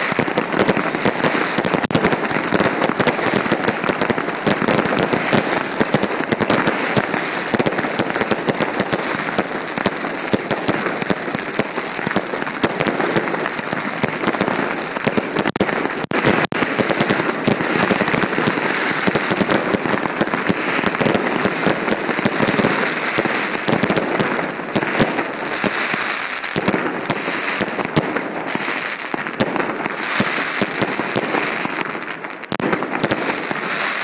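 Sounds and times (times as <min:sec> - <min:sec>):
fireworks crackling and popping: 0:00.0 - 0:34.0.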